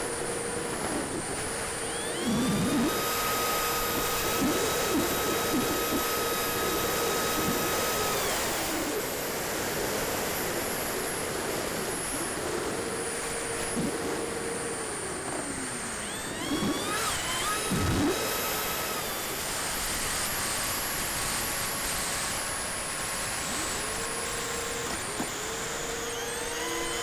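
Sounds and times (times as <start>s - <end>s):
electric ducted fans whining: 0.0s - 19.7s.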